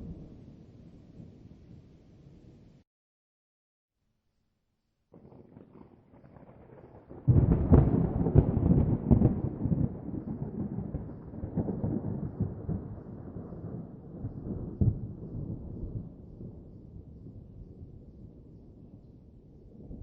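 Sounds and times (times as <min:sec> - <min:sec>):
thunder clap: 0:05.2 - 0:13.8
thunder rumbling: 0:05.2 - 0:18.1.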